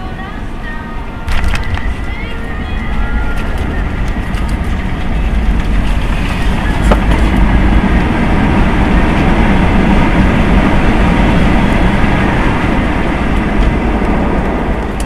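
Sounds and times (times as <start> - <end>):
aircraft engine and wheel rumble: 0.0 - 15.0.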